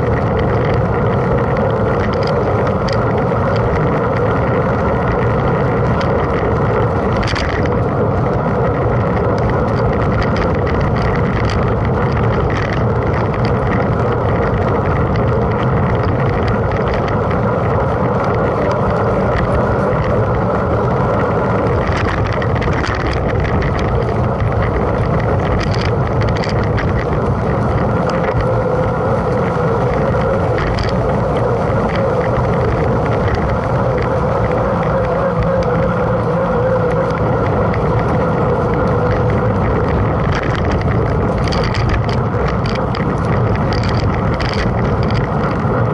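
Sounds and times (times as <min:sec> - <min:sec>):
bike rattling: 0:00.0 - 0:45.9
tyre rumble: 0:00.0 - 0:45.9
wind on microphone: 0:00.0 - 0:45.9.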